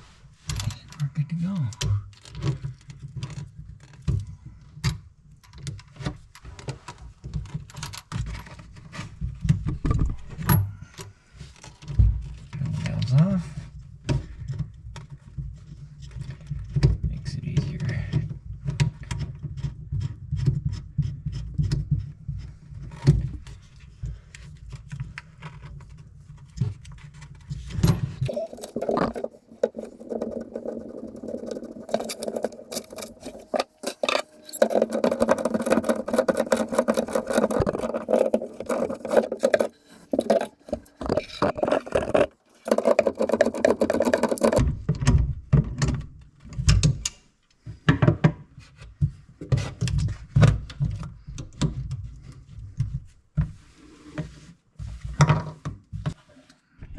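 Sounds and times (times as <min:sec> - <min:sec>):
metal clicks and knocks: 0:28.3 - 0:44.6
tool scraping: 0:28.3 - 0:44.6.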